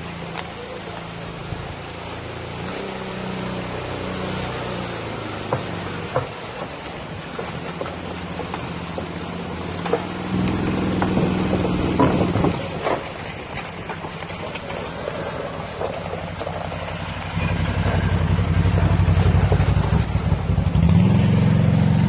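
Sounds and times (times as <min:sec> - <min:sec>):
atv engine revving: 0:00.0 - 0:22.0
knocks and clatter: 0:05.1 - 0:20.9.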